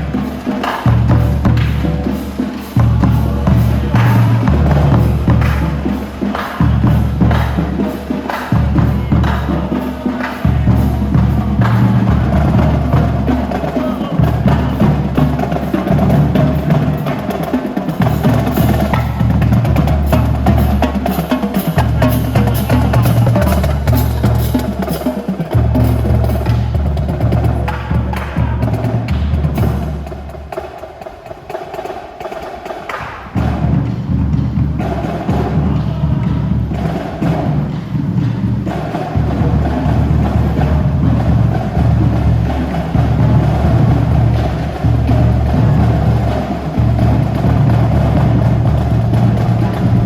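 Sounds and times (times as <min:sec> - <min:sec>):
drum strokes: 0:00.0 - 0:50.0.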